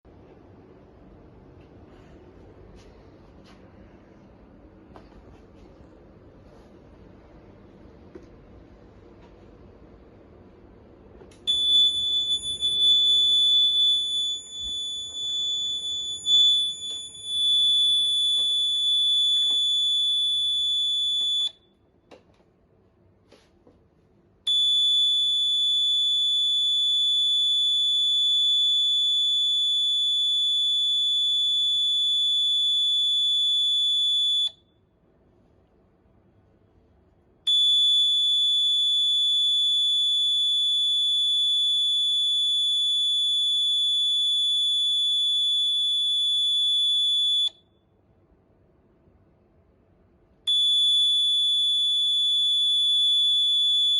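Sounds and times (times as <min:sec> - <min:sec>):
high-pitched alarm buzzer: 0:11.5 - 0:21.6.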